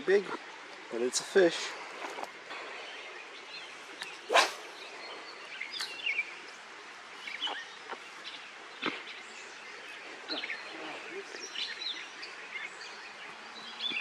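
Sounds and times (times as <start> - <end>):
background hiss: 0.0 - 14.0
bird chirps: 2.5 - 6.4.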